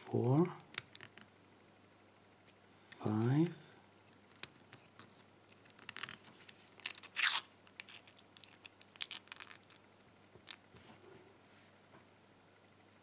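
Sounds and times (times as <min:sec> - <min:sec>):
small metal clicks and scrapes: 0:04.0 - 0:09.8.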